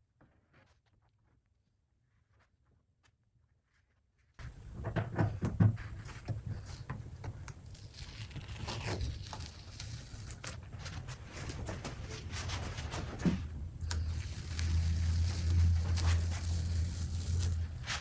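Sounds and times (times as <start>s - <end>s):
plastic spreader scraping filler: 4.4s - 18.0s.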